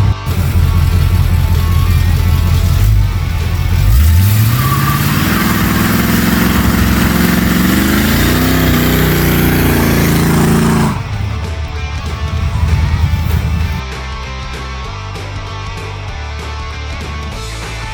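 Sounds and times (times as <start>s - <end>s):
car engine revving up: 0.0s - 13.8s.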